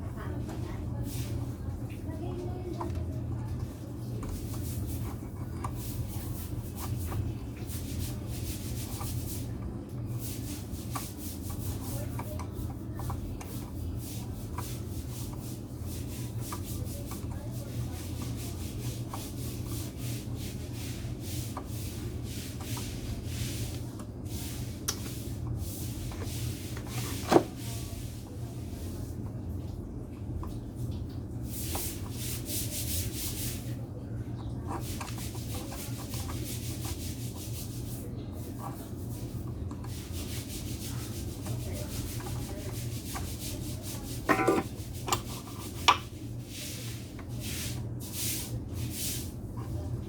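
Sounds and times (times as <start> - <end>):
hand scraping hard surface: 34.7 - 49.8.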